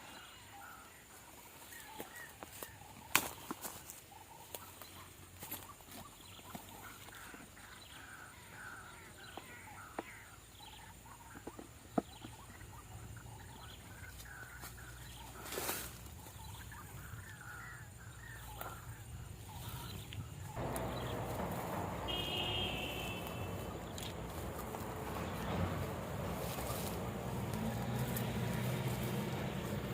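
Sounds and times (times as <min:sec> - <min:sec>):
loud rustling: 0:20.6 - 0:29.9.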